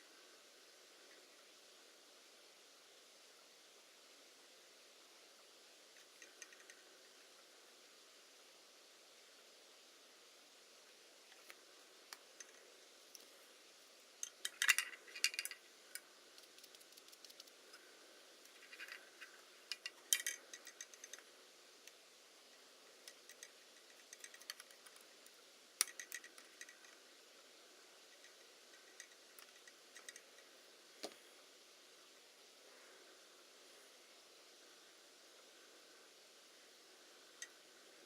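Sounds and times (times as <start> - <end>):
faint steady hiss: 0.0 - 38.0
tools and small parts clinking: 14.2 - 15.6, 18.5 - 21.2.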